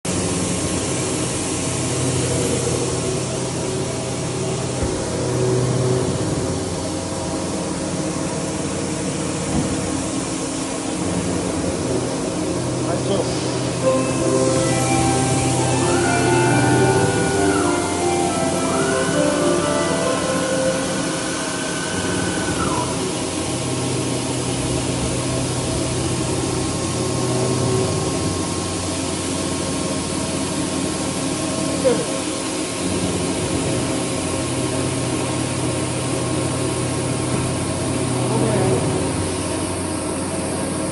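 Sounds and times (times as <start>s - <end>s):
machine whine: 13.7s - 25.5s.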